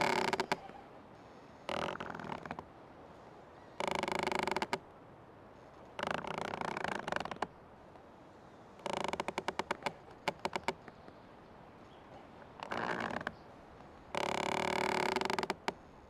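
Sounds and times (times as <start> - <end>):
old tree creaking: 0.0 - 2.7, 3.6 - 4.9, 5.6 - 7.6, 8.7 - 11.2, 12.1 - 15.9.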